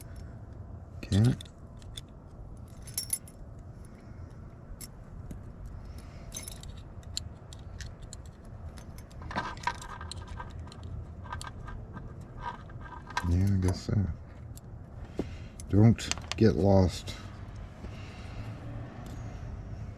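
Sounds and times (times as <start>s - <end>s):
metal lock parts clicking: 1.1s - 3.4s, 4.8s - 14.7s.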